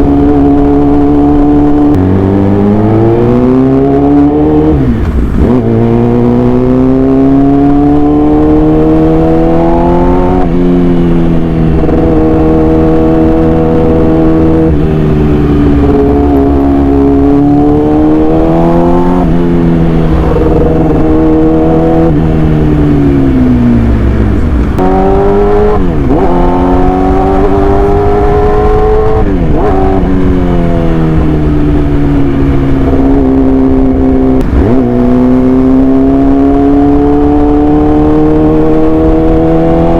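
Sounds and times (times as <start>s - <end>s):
sport bike engine revving: 0.0s - 39.9s.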